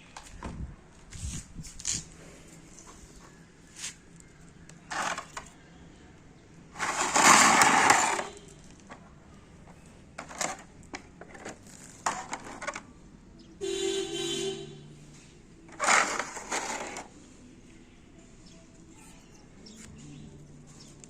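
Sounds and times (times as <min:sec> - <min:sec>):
harsh rasping noise: 0:06.8 - 0:08.5, 0:15.7 - 0:17.1.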